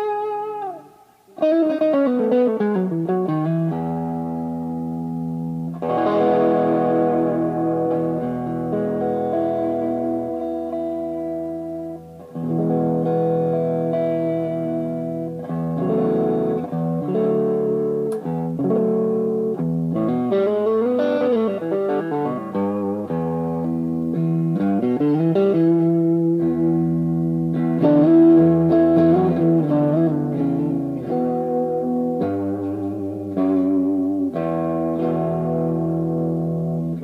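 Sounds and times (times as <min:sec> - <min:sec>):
electric guitar chords and notes: 0:00.0 - 0:37.0.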